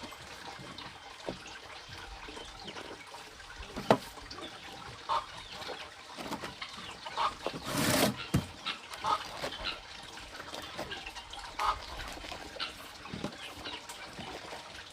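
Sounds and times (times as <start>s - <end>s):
chickens clucking: 4.4s - 14.4s.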